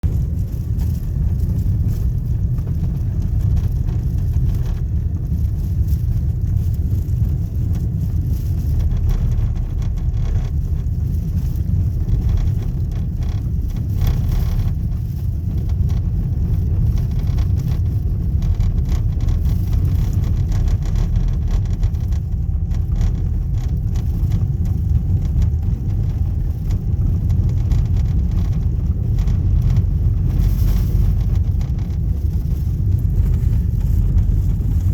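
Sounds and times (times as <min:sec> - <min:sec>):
tyres rumbling on gravel: 0:00.0 - 0:34.9.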